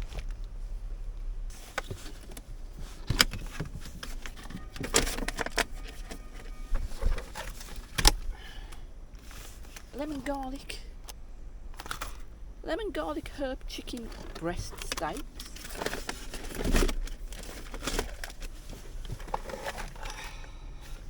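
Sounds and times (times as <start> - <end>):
clicks and knocks in a car: 1.5 - 8.8, 13.8 - 21.0.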